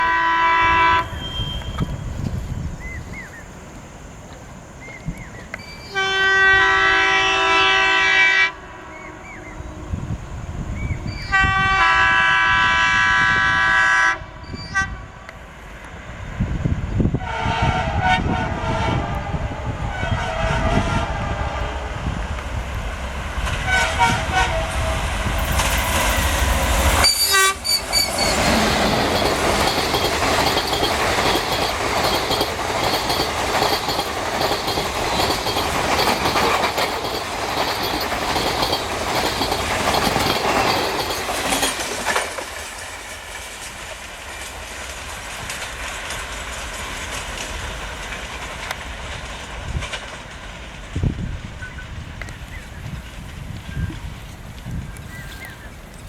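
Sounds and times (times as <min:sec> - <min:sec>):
locomotive air horn blasts: 0:00.0 - 0:02.0, 0:05.8 - 0:10.2, 0:11.2 - 0:15.2, 0:17.1 - 0:22.1, 0:23.6 - 0:25.3, 0:27.0 - 0:28.9
locomotive rumble: 0:14.4 - 0:56.0
train wheels clattering: 0:17.3 - 0:56.0.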